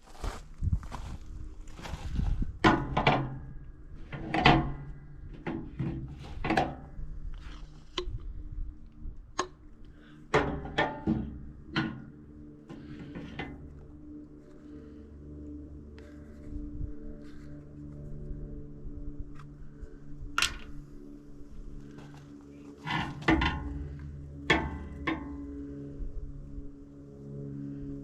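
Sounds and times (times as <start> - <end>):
steady machine hum: 0.0 - 28.0
knocks and clunks: 2.6 - 6.9, 10.3 - 13.6, 22.8 - 25.5.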